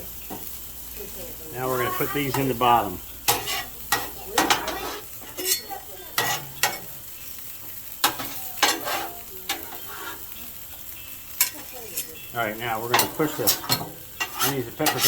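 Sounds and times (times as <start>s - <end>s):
vegetables sizzling on a griddle: 0.0s - 15.0s
metal spatula scraping and tapping: 3.3s - 6.9s, 8.0s - 10.2s, 11.4s - 12.2s, 12.9s - 15.0s.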